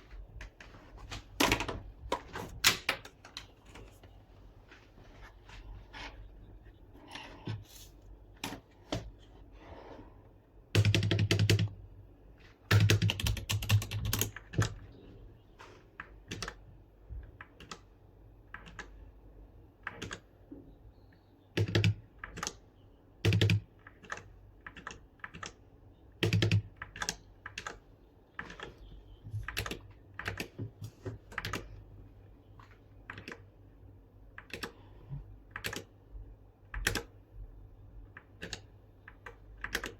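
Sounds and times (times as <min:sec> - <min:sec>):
mechanical keyboard typing: 0:10.7 - 0:11.8, 0:12.7 - 0:14.8, 0:16.0 - 0:16.6, 0:21.6 - 0:22.6, 0:23.2 - 0:25.6, 0:26.2 - 0:27.8, 0:29.4 - 0:30.6, 0:31.2 - 0:31.7, 0:33.0 - 0:33.5, 0:34.4 - 0:34.8, 0:35.5 - 0:36.0, 0:36.7 - 0:37.2, 0:38.1 - 0:39.9.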